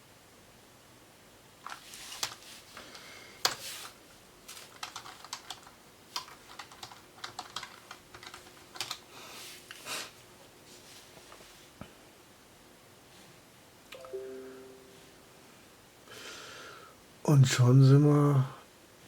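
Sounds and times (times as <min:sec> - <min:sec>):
typing on computer keyboard: 0:01.6 - 0:02.4, 0:04.6 - 0:09.0.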